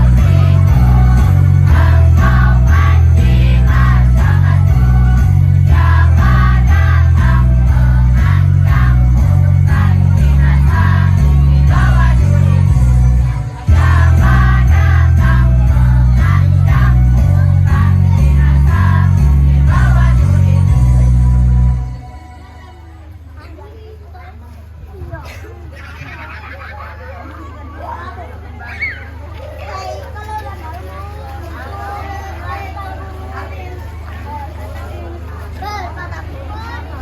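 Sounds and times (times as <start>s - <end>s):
bass-heavy backing music: 0.0s - 22.6s
children's choir singing: 0.0s - 23.1s.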